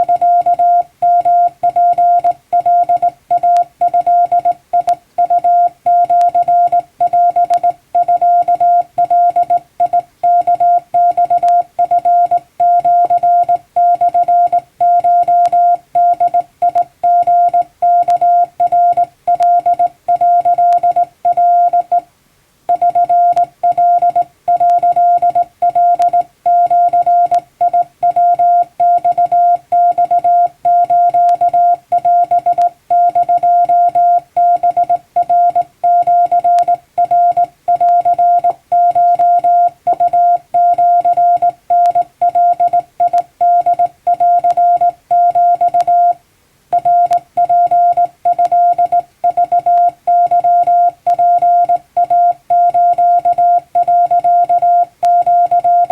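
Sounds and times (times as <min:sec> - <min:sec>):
morse code beeps: 0:00.0 - 0:22.0, 0:22.7 - 0:55.9.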